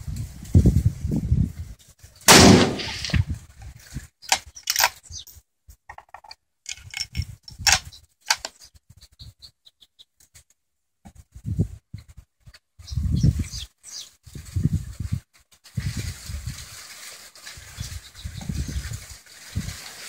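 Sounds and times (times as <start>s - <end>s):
rifle shot with ringing echo: 2.3s - 3.2s
sharp clicks and knocks: 5.9s - 8.6s.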